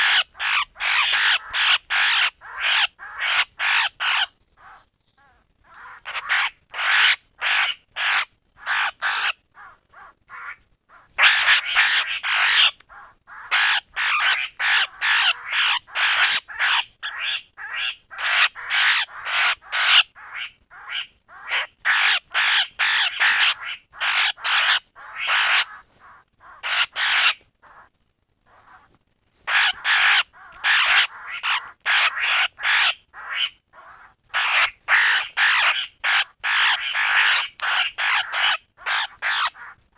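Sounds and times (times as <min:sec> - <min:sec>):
laughingthrush harsh calls: 0:00.0 - 0:04.8, 0:05.7 - 0:27.9, 0:28.5 - 0:39.8.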